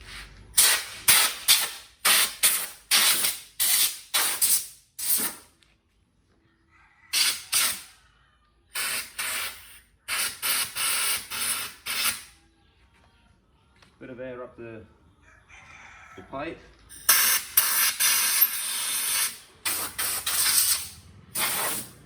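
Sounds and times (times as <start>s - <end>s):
air blow gun hissing bursts: 0.0s - 5.4s, 7.1s - 7.9s, 8.8s - 12.3s, 17.1s - 22.0s.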